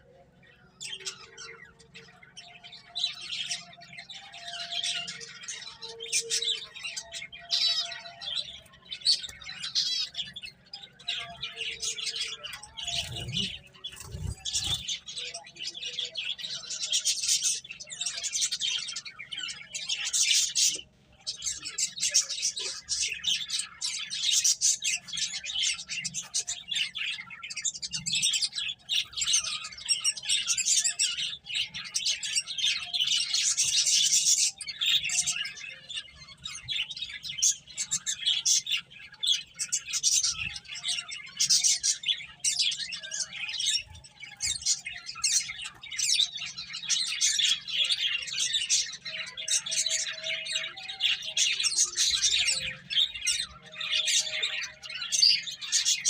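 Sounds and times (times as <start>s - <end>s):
finches chirping: 8.9s - 15.4s.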